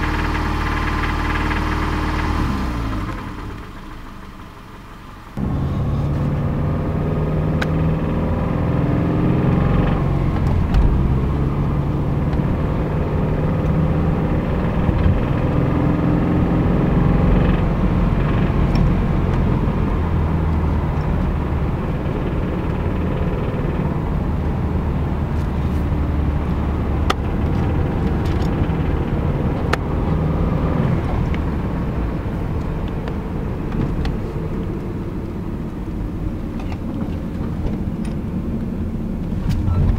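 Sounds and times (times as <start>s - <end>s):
engine knocking: 0.0s - 4.6s, 17.0s - 31.9s
car engine running: 0.0s - 39.9s.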